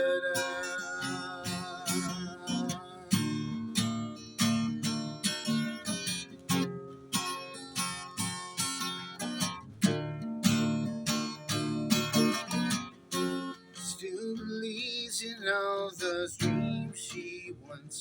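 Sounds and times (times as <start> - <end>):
person singing: 0.0 - 4.0
strummed guitar chords: 0.0 - 18.0.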